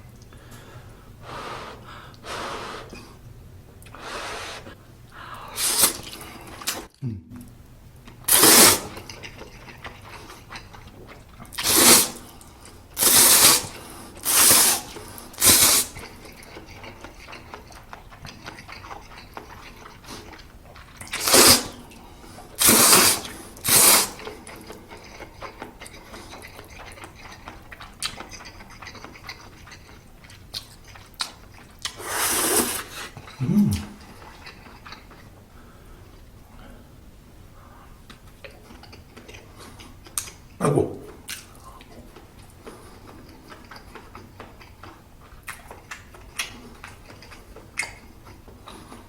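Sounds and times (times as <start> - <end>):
person slurping noodles: 5.4 - 6.9, 8.3 - 9.1, 11.6 - 12.2, 13.0 - 16.0, 21.1 - 21.8, 22.6 - 24.2, 31.8 - 34.2
faint chewing clicks: 8.9 - 11.6, 14.9 - 21.2, 24.2 - 32.0, 34.0 - 36.3, 38.1 - 49.0.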